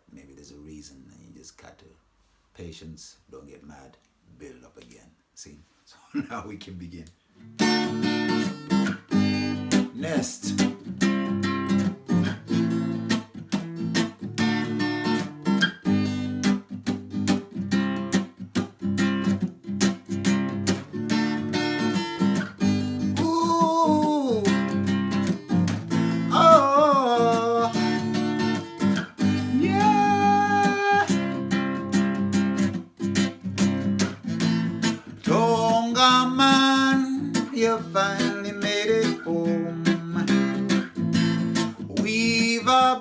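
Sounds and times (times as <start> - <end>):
acoustic guitar strumming: 7.4 - 43.0
person singing wordless phrases: 9.9 - 10.8, 23.0 - 25.0, 26.0 - 28.6, 29.2 - 31.8, 34.9 - 40.9, 41.8 - 43.0.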